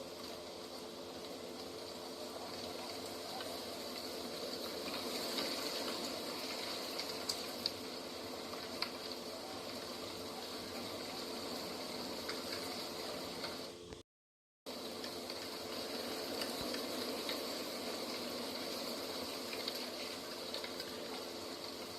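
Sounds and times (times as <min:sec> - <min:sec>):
continuous rushing noise: 0:00.0 - 0:13.9.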